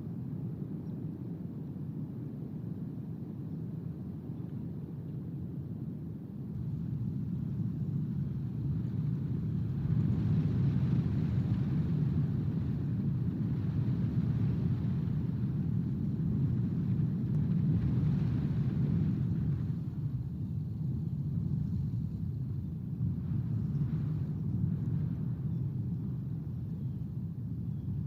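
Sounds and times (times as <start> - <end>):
wind buffeting microphone: 6.3 - 28.0.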